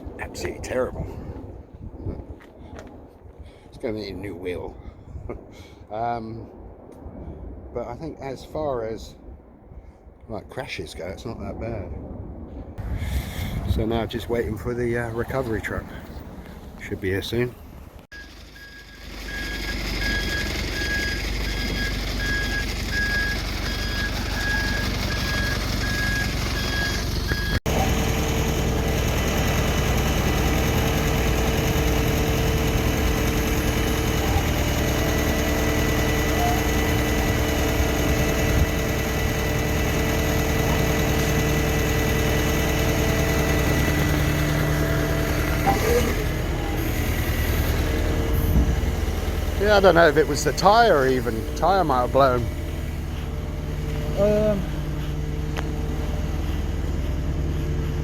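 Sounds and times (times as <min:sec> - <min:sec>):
truck engine idling: 0:12.8 - 0:58.0
truck reversing alarm beeping: 0:18.1 - 0:58.0.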